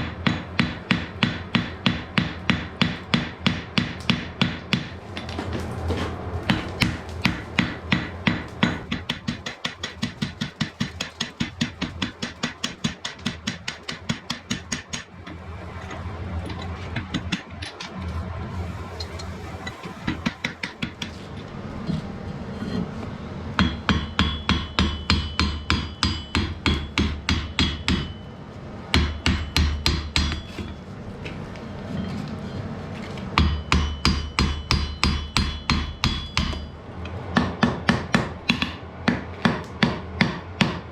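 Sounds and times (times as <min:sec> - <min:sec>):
hammer striking iron on anvil: 0:00.0 - 0:05.4, 0:06.5 - 0:15.1, 0:23.6 - 0:28.3, 0:28.9 - 0:30.8, 0:33.4 - 0:36.8, 0:37.4 - 0:40.9
steady noise: 0:00.0 - 0:33.8.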